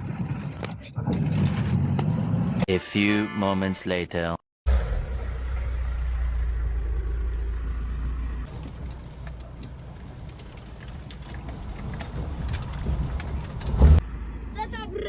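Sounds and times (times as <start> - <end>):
vehicle engine rumbling: 4.8 - 14.4.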